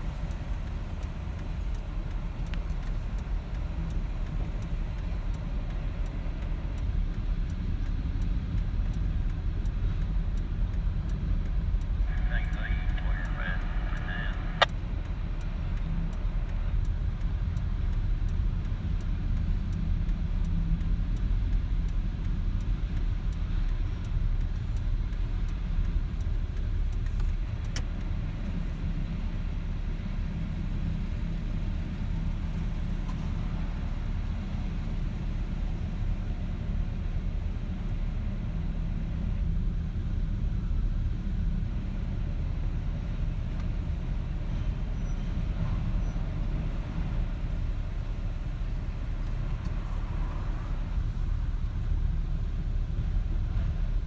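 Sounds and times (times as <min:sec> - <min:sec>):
sharp rail clicks: 0:00.0 - 0:18.0
freight train rumbling on track: 0:27.4 - 0:54.0.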